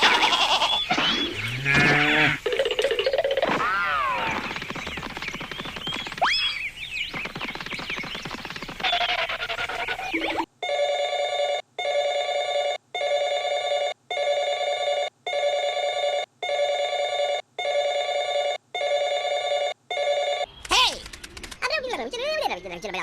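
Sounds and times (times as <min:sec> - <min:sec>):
noise with sliding chirps: 0:00.0 - 0:10.5.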